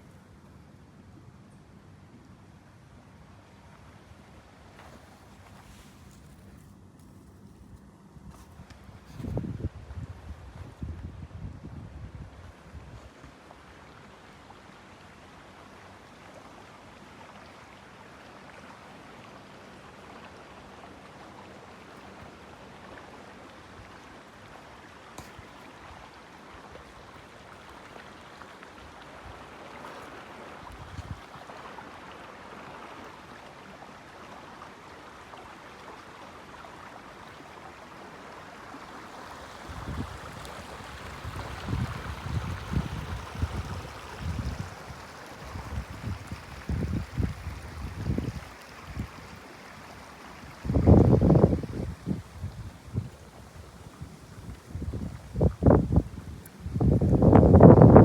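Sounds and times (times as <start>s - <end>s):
wind buffeting microphone: 8.6s - 13.0s, 39.7s - 49.4s, 50.5s - 53.3s, 53.9s - 58.0s.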